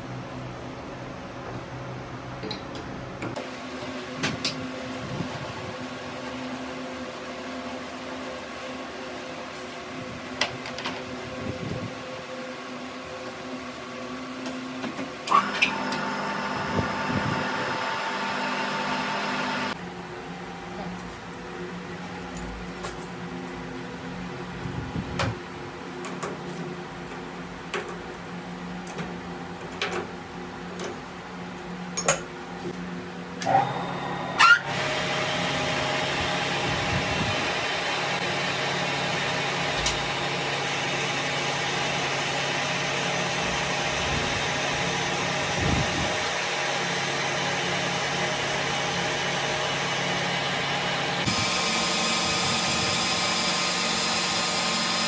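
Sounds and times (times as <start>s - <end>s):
lathe motor whine: 15.2s - 19.8s, 33.4s - 55.0s.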